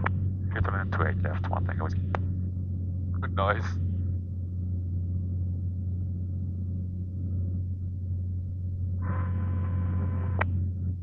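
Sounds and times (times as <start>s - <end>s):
aircraft engine drone: 0.0s - 11.0s
brief buzzing tone: 9.0s - 10.6s.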